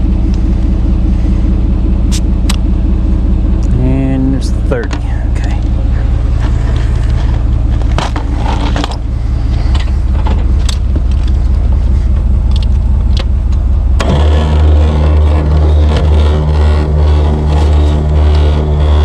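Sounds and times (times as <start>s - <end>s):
deep hum: 0.0s - 19.0s
engine idling: 0.0s - 19.0s
handling clicks and knocks: 6.4s - 9.0s.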